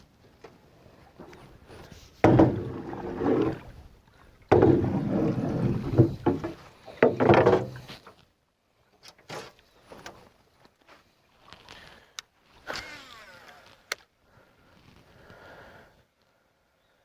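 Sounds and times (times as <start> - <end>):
thumps and clattering in boat: 2.1 - 3.8, 4.4 - 8.2.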